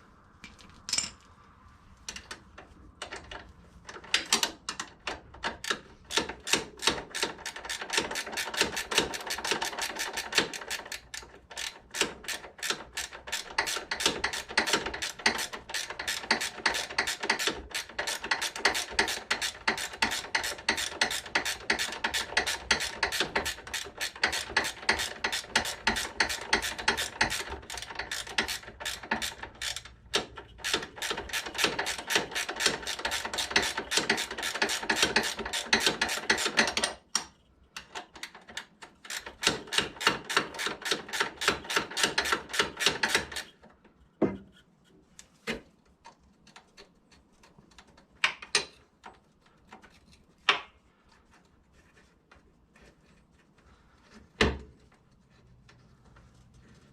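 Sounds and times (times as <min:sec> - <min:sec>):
socket ratchet clicking: 0:05.6 - 0:36.9.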